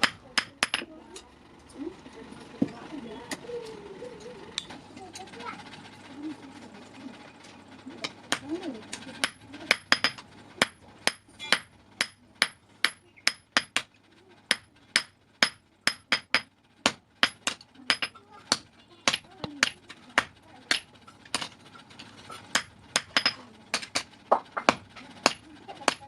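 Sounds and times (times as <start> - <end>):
hammer striking steel on anvil: 0.0 - 0.8, 9.2 - 13.9, 14.5 - 21.5, 22.5 - 26.0.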